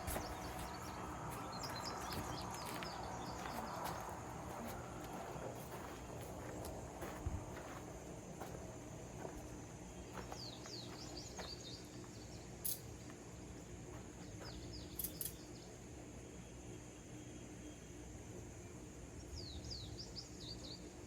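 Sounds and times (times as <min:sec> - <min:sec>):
birds chirping: 0:00.0 - 0:12.8.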